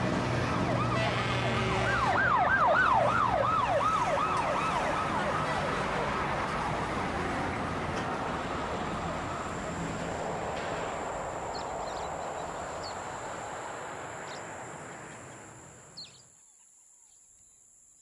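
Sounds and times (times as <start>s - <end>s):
emergency siren yelping: 0.1s - 10.4s.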